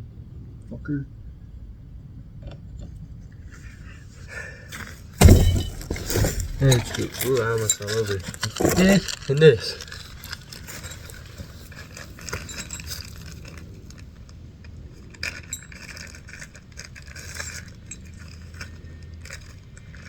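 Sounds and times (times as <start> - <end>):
small metal parts clinking: 5.2 - 20.0.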